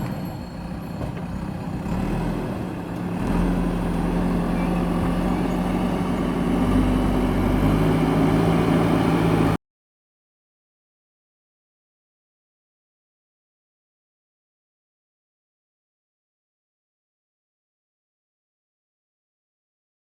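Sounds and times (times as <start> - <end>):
diesel engine running: 0.0 - 9.6.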